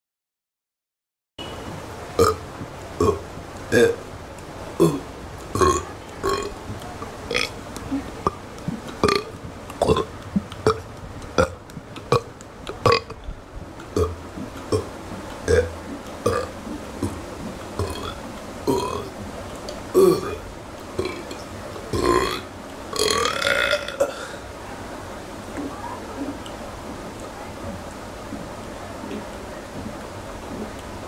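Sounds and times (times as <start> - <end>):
person burping: 2.2 - 2.4, 3.0 - 4.0, 4.8 - 6.5, 7.3 - 7.5, 9.0 - 10.1, 11.4 - 13.2, 13.9 - 14.9, 15.5 - 17.2, 17.8 - 19.1, 20.0 - 20.4, 21.9 - 24.4.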